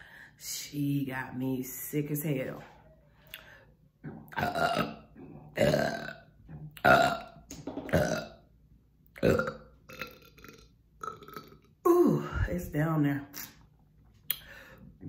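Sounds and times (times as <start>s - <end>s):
woman burping loudly: 4.3s - 8.4s, 9.2s - 12.3s.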